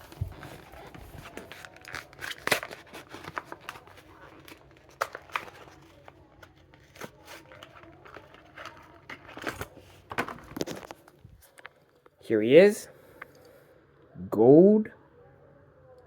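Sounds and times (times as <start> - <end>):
cardboard tearing: 0.0 - 11.0
plastic crinkling: 0.0 - 12.0.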